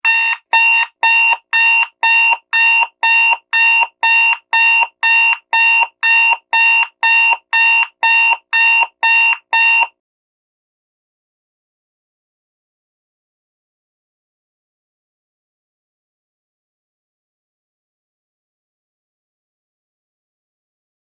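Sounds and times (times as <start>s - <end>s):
digital alarm clock beeping: 0.0s - 9.9s.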